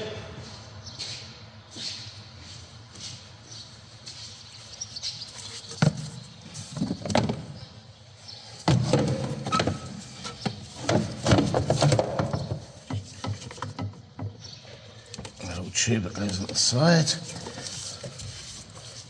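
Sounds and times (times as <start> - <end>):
plastic parts knocking and clicking: 8.7 - 14.5
plastic parts rubbing: 16.2 - 19.0.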